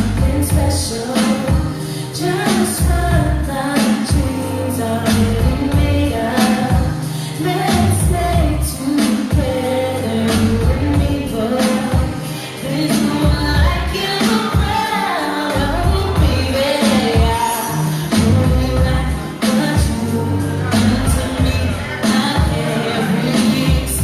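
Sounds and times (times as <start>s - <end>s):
deep bass: 0.0s - 1.0s, 2.8s - 3.5s, 4.2s - 6.9s, 7.7s - 8.7s, 9.4s - 11.4s, 13.2s - 13.9s, 15.6s - 16.7s, 18.1s - 19.2s, 19.8s - 22.7s, 23.7s - 24.0s
pop song with singing: 0.0s - 24.0s
steady drum beat: 20.7s - 24.0s.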